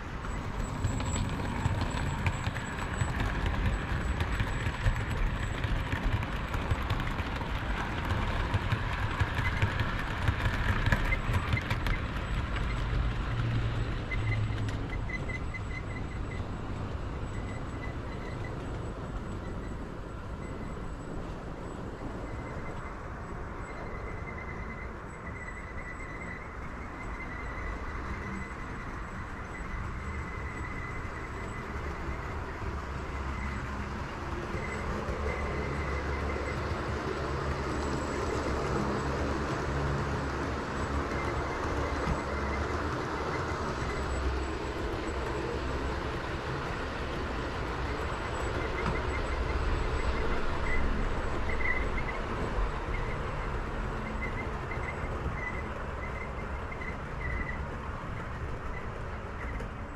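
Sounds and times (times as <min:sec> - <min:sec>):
train rumbling along track: 0:00.0 - 0:59.9.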